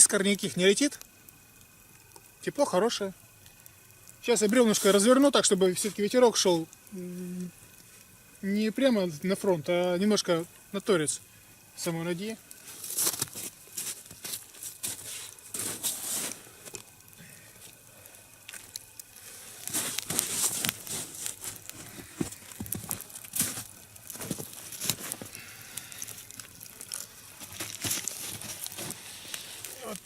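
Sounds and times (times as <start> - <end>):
smouldering log rustling and scraping: 12.5 - 17.8, 18.4 - 30.0.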